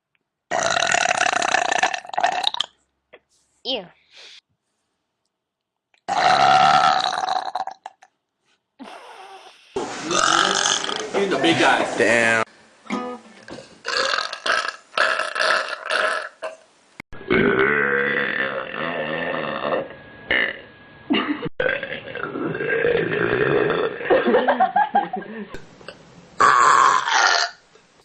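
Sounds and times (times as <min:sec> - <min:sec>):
people belching loudly: 0:00.5 - 0:02.7, 0:06.1 - 0:08.1, 0:10.1 - 0:11.2, 0:13.5 - 0:16.6, 0:17.2 - 0:20.6, 0:21.6 - 0:24.2, 0:26.4 - 0:27.6.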